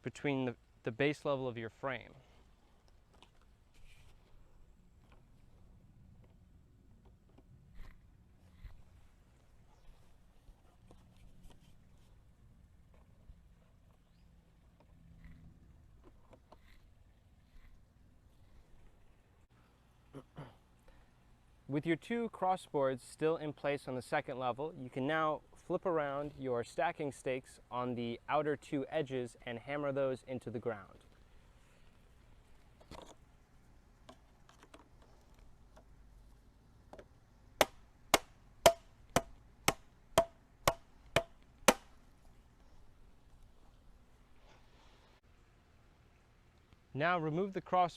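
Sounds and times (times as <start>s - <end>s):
hammer blows on stake: 37.6s - 41.9s.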